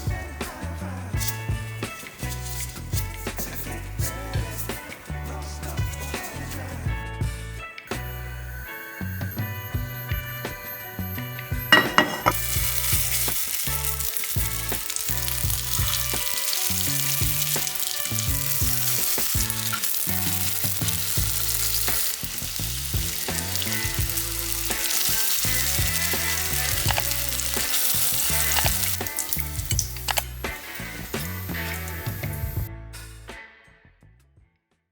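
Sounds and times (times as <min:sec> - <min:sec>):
background music: 0:00.0 - 0:34.2
food sizzling in hot oil: 0:01.2 - 0:04.9, 0:11.7 - 0:32.7.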